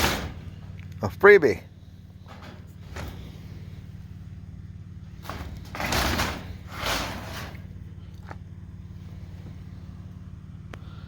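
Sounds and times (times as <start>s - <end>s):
steady low hum: 0.0s - 11.0s
short scraping sounds: 5.2s - 7.8s.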